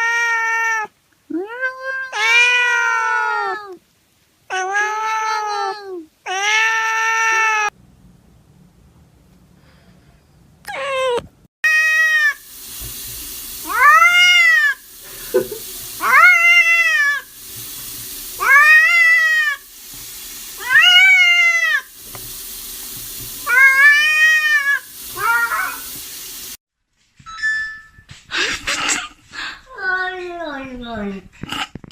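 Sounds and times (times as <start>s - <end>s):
cat meowing: 0.0s - 3.8s, 4.5s - 7.7s, 16.0s - 17.2s, 20.6s - 21.8s, 23.5s - 25.8s
background hiss: 0.0s - 10.7s, 11.8s - 27.2s.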